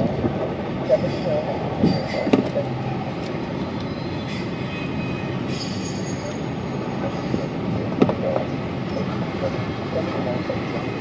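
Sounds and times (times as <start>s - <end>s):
train wheels rumbling on rails: 0.0s - 11.0s
high wheel squeal: 0.9s - 7.7s.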